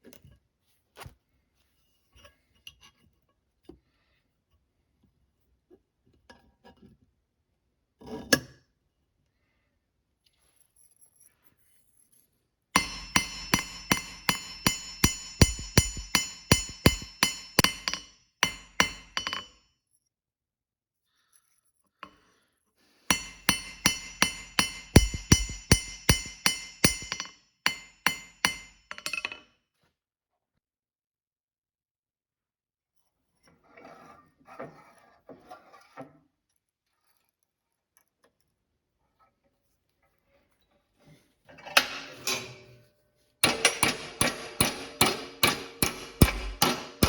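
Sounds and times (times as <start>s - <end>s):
hammer ringing on anvil: 12.8s - 19.5s, 23.1s - 29.4s, 43.4s - 47.0s.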